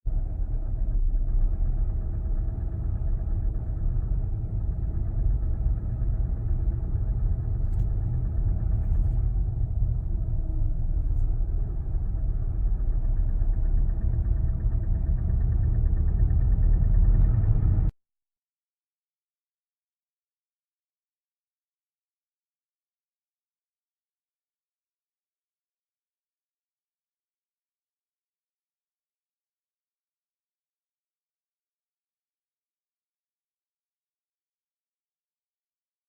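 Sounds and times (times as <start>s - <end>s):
car engine idling: 0.1s - 17.9s.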